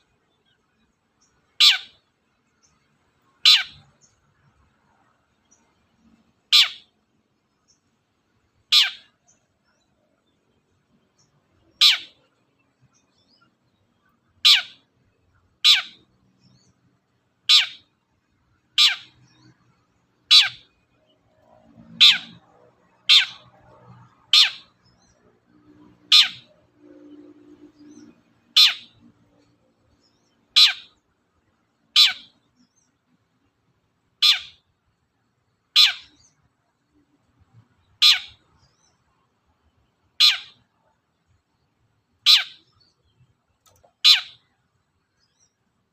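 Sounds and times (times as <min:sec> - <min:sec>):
bird giving sharp calls: 0:01.6 - 0:02.0, 0:03.4 - 0:03.9, 0:06.5 - 0:06.9, 0:08.7 - 0:09.2, 0:11.7 - 0:12.3, 0:14.3 - 0:14.9, 0:15.6 - 0:16.1, 0:17.5 - 0:17.9, 0:18.7 - 0:19.6, 0:20.2 - 0:20.8, 0:21.8 - 0:25.2, 0:26.0 - 0:27.1, 0:27.8 - 0:29.1, 0:30.5 - 0:31.0, 0:32.0 - 0:32.4, 0:34.2 - 0:34.6, 0:35.7 - 0:36.3, 0:37.9 - 0:38.5, 0:40.1 - 0:40.7, 0:42.2 - 0:42.8, 0:43.9 - 0:44.4.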